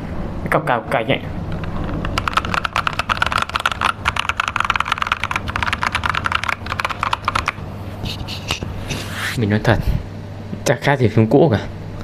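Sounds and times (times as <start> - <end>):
mechanical keyboard typing: 2.0 - 7.6.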